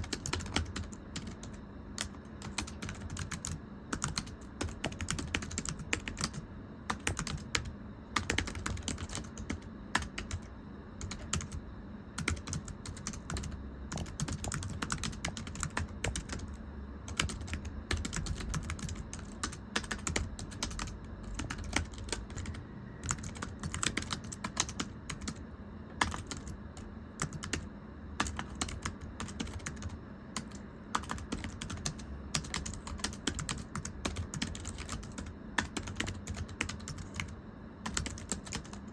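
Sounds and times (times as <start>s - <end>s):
typing on thin keyboard: 0.0s - 11.6s, 12.2s - 25.4s, 26.0s - 26.6s, 27.2s - 38.9s.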